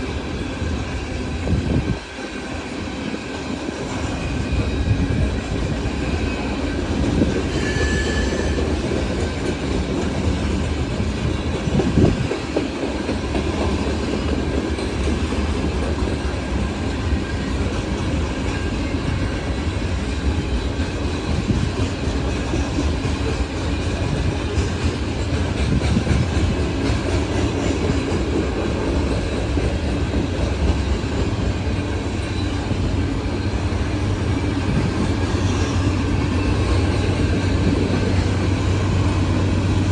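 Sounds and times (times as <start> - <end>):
train wheels rumbling on rail: 0.0 - 39.9
clickety-clack over rail joints: 1.4 - 39.9
high wheel squeal: 7.5 - 8.8.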